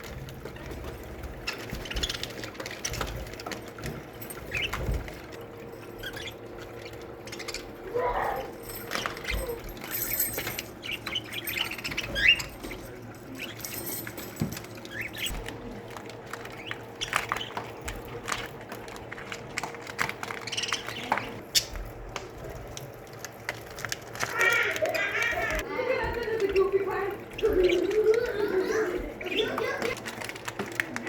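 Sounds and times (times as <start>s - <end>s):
budgerigars chattering: 20.4s - 21.8s.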